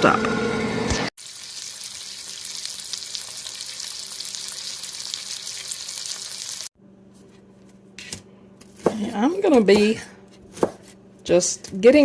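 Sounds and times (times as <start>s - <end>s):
food sizzling in a pan: 1.2s - 6.7s.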